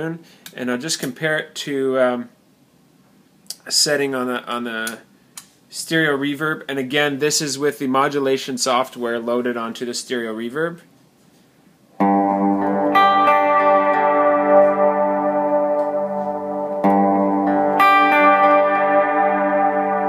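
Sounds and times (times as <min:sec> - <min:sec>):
electric guitar chords with reverb: 0:12.0 - 0:20.0.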